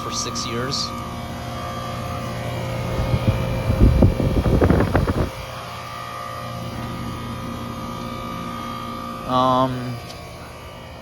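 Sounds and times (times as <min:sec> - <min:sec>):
air conditioner unit humming: 0:00.0 - 0:11.0
loud low rumble: 0:02.9 - 0:05.5.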